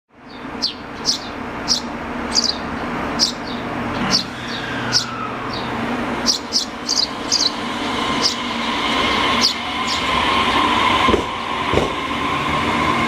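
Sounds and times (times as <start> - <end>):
train humming: 0.2 - 13.0
high bird-like chirps: 0.3 - 8.5, 9.3 - 10.2.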